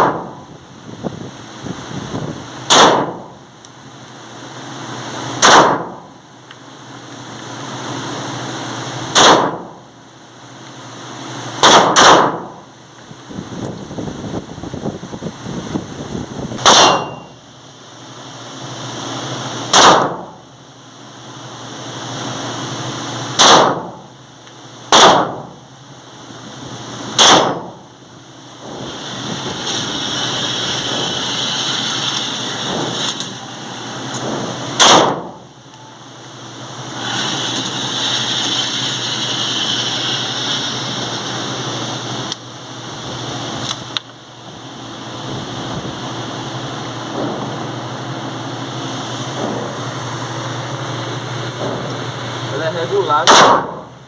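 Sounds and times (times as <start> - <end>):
pistol shots: 2.7 - 3.2, 5.4 - 6.0, 9.1 - 9.6, 11.6 - 12.5, 16.6 - 17.2, 19.7 - 20.2, 23.4 - 23.9, 24.9 - 25.4, 27.2 - 27.7, 34.8 - 35.3, 53.2 - 53.8.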